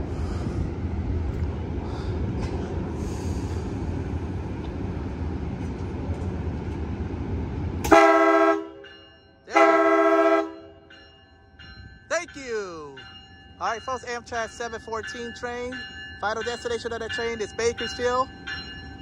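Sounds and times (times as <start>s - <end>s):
train low rumble: 0.0s - 19.0s
locomotive air horn: 7.8s - 8.8s, 9.5s - 10.8s.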